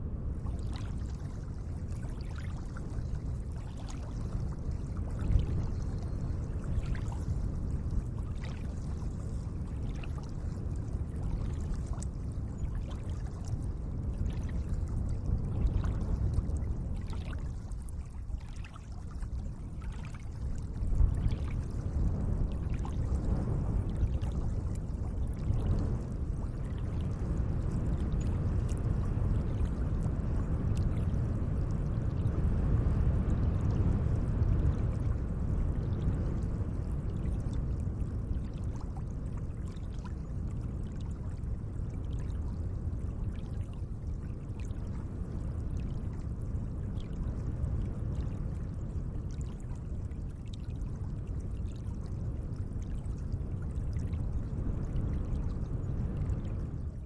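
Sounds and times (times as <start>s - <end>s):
gentle lake water washing: 0.3s - 57.0s
small water splashes: 0.4s - 27.0s.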